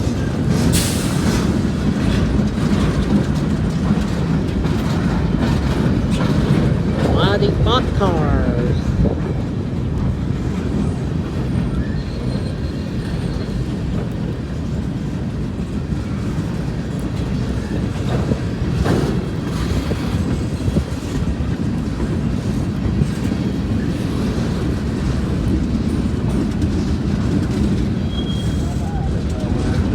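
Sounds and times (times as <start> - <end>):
steel wheels rumbling on rail: 0.0 - 7.1, 8.7 - 29.9
faint high wheel squeals: 11.7 - 13.7, 28.0 - 29.0.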